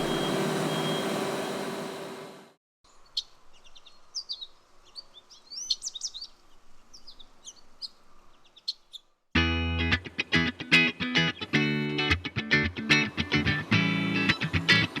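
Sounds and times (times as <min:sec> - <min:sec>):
birds chirping: 0:02.9 - 0:09.2.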